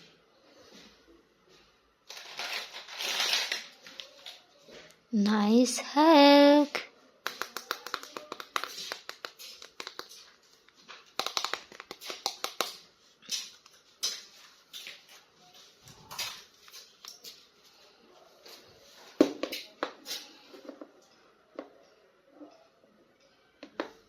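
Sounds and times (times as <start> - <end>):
packaging rustling: 2.1 - 4.4
plastic toy clicks and taps: 11.2 - 12.7.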